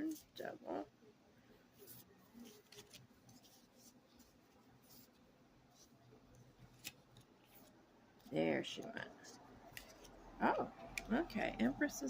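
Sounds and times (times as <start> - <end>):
cards leafed through by hand: 1.8 - 7.7, 9.7 - 10.2.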